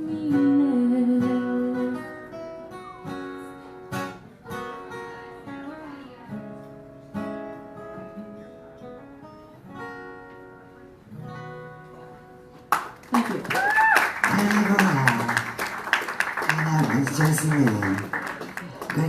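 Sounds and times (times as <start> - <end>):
acoustic guitar strummed chords: 0.0 - 13.0.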